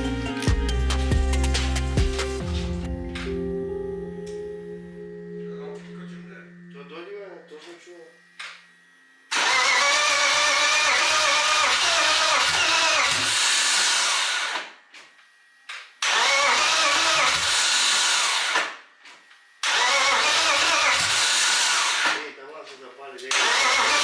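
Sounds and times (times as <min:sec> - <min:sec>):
starter motor cranking engine: 0:09.3 - 0:14.8, 0:16.0 - 0:18.8, 0:19.6 - 0:24.0.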